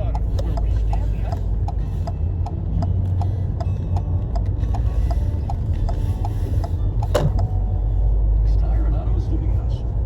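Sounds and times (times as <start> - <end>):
car turn signal ticking: 0.0 - 7.6
car engine hum: 0.0 - 10.0.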